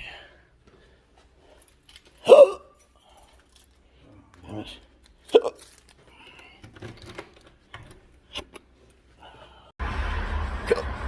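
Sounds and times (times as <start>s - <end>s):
man hiccuping: 2.2s - 2.8s, 5.3s - 5.6s.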